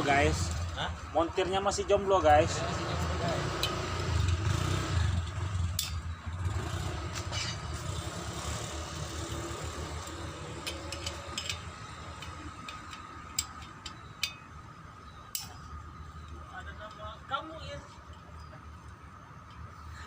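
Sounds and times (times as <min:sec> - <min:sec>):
motor engine rumbling: 0:00.0 - 0:20.0
metal parts clicking: 0:10.1 - 0:14.4.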